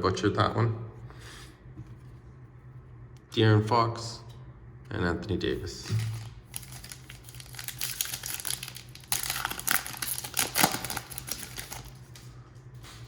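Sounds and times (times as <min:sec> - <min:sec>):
plastic wrapper crinkling and tearing: 0:05.9 - 0:12.3.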